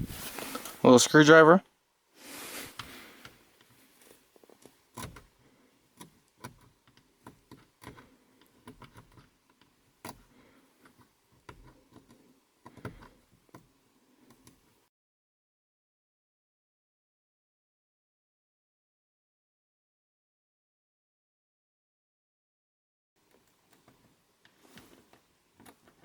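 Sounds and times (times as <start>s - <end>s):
screwdriver scraping plastic buttons: 4.9s - 5.4s, 6.0s - 14.7s.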